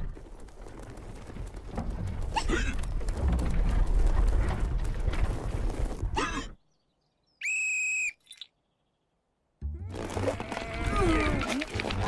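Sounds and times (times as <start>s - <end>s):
clattering rumbling commotion: 0.1s - 6.2s.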